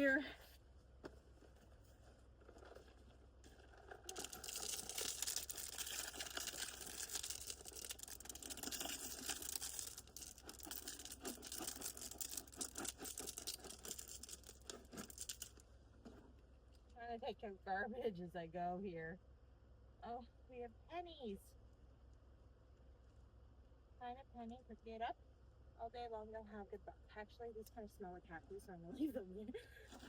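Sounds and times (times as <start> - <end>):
gravel crunching and scraping: 0.0 - 16.5.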